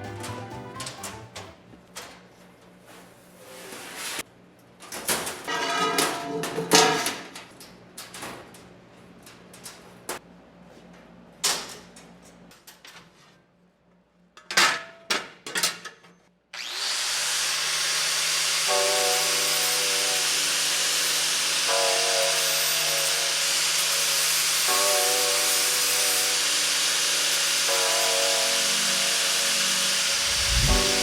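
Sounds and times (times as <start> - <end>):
music: 0.0 - 1.6, 18.8 - 20.3, 24.8 - 26.4, 27.8 - 31.0
shop tool hissing: 18.6 - 31.0.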